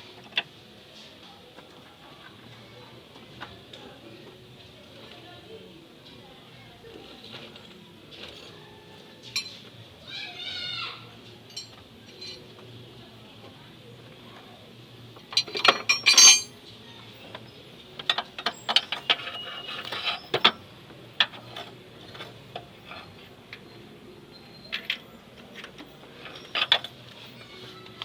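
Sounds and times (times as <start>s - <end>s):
metal tools clinking: 9.3s - 9.6s, 11.5s - 12.5s, 15.3s - 16.6s, 18.0s - 20.6s, 24.5s - 27.6s.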